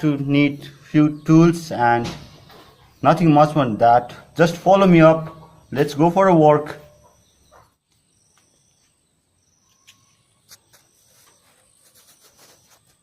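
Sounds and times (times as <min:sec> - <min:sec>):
faint insect trills: 0:07.9 - 0:13.0.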